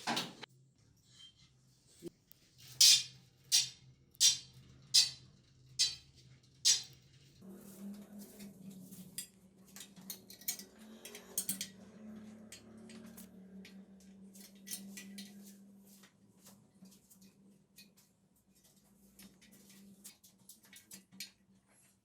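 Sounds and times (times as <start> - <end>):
metal parts clinking and scraping: 5.8 - 7.0.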